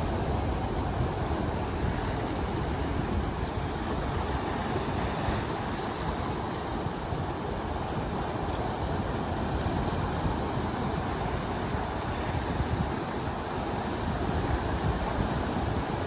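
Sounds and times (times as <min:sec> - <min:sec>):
ocean surf on rocky shore: 0:00.0 - 0:16.0
wind noise on microphone: 0:00.0 - 0:16.0.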